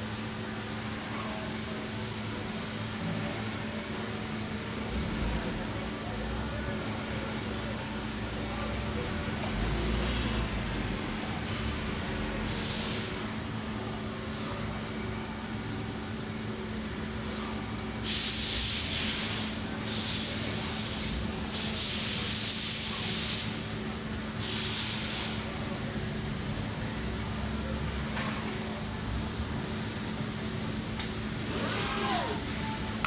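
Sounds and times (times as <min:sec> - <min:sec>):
bursts of hissing air: 0:12.4 - 0:13.2, 0:18.0 - 0:23.6, 0:24.4 - 0:25.5.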